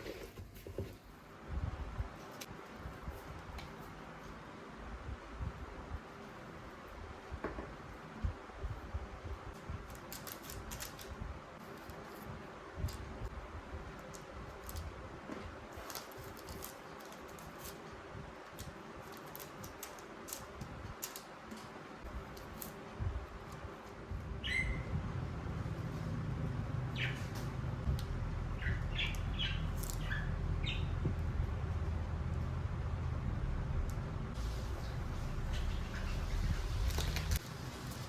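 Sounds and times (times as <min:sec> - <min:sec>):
steady low rumble: 0:22.0 - 0:38.0
small birds chirping: 0:24.4 - 0:25.0, 0:26.7 - 0:31.6, 0:34.4 - 0:37.4.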